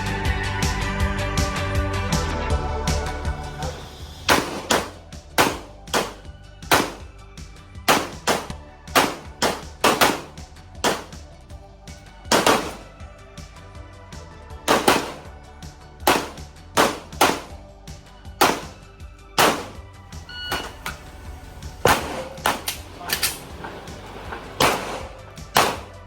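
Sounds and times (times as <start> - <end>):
background music: 0.0 - 26.0
handgun shots: 4.3 - 7.1, 7.9 - 11.2, 12.3 - 13.0, 14.7 - 15.3, 16.1 - 17.6, 18.4 - 18.8, 19.4 - 19.9, 20.5 - 21.0, 21.8 - 23.5, 24.6 - 26.0.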